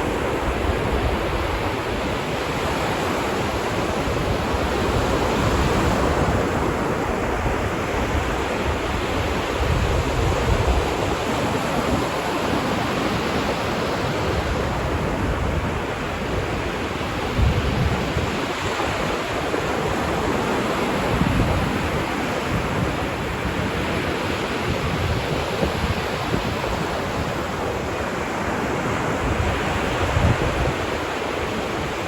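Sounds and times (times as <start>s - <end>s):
ocean surf on beach: 0.0s - 32.0s.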